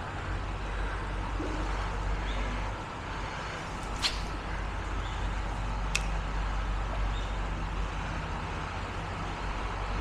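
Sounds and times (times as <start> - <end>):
sharp swish: 3.8 - 4.5.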